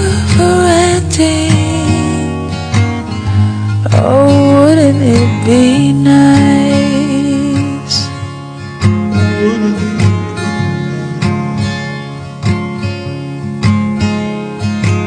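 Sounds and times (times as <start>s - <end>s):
pop music with plucked guitar: 0.0s - 15.0s
person singing: 9.2s - 10.2s.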